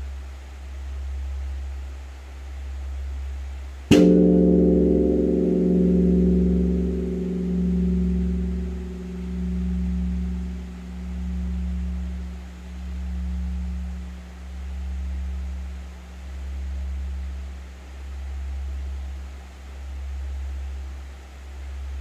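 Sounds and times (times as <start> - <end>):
bell humming: 3.9 - 17.8
large bronze bell struck: 3.9 - 19.2.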